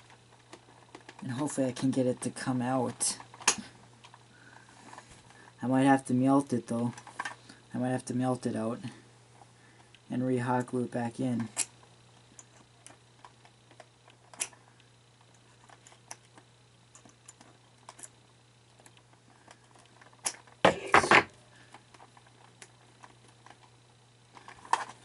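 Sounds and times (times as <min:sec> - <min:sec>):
plastic parts clicking: 0:00.0 - 0:01.2, 0:18.8 - 0:20.9
faint low hum: 0:00.0 - 0:25.0.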